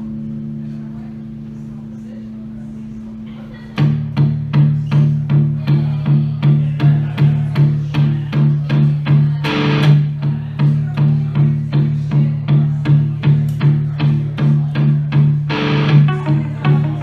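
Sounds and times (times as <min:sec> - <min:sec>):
low pulsing note: 0:15.5 - 0:17.0
plucked guitar figure: 0:15.5 - 0:17.0.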